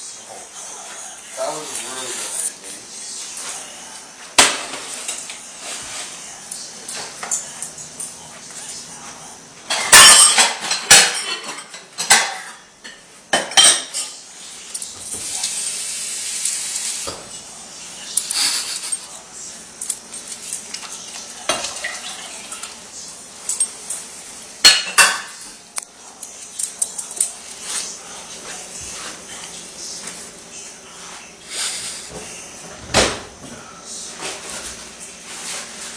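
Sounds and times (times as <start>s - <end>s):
steady hiss: 0.0s - 32.6s
pots and pans clattering: 4.4s - 5.3s, 9.7s - 14.2s, 21.4s - 22.8s, 24.6s - 25.4s.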